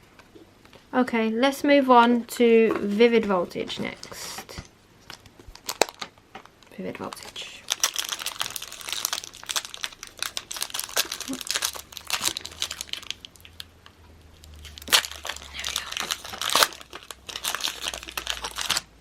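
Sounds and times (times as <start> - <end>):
foil wrapper crinkling and tearing: 5.0 - 18.9.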